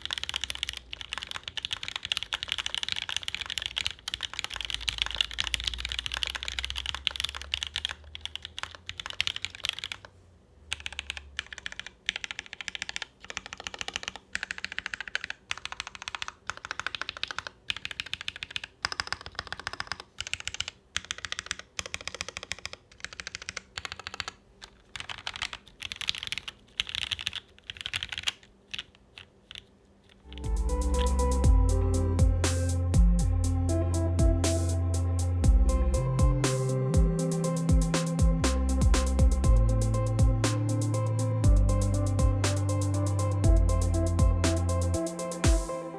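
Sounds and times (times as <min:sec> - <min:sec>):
mechanical keyboard typing: 0:00.0 - 0:10.1, 0:10.7 - 0:31.4, 0:41.6 - 0:45.7
music: 0:30.3 - 0:45.9.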